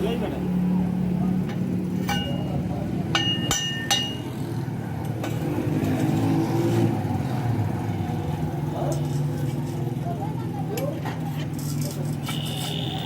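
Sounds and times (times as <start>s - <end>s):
metallic clanks on steel: 2.0s - 4.3s.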